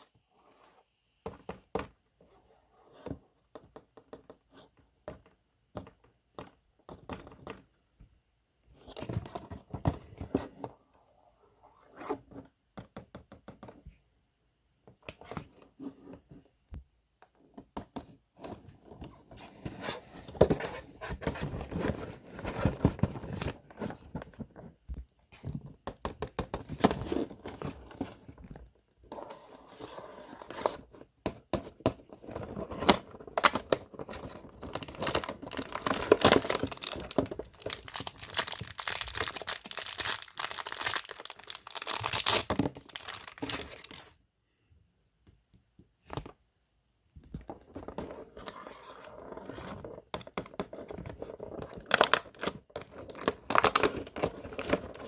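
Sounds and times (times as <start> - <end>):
packaging crinkling and tearing: 33.4 - 44.1, 53.0 - 55.0.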